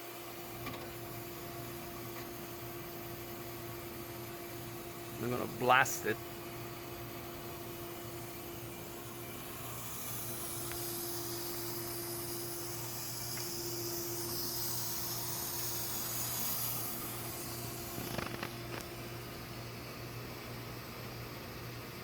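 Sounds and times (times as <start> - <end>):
water hissing from hose: 9.5 - 18.8.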